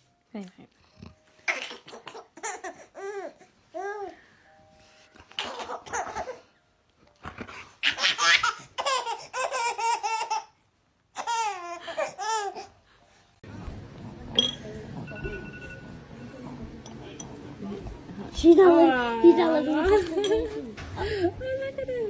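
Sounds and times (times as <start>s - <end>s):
baby laughing: 1.5s - 4.1s, 5.3s - 6.5s, 7.5s - 10.6s, 11.2s - 12.8s.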